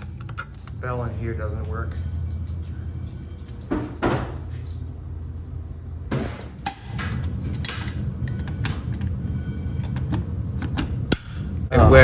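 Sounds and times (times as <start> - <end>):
fire alarm bells ringing: 0.5 - 6.0, 7.5 - 10.5.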